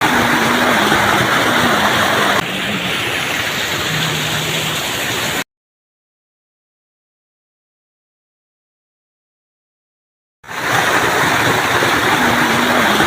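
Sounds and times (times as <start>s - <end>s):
waterfall rushing: 0.0s - 5.4s, 10.5s - 13.0s.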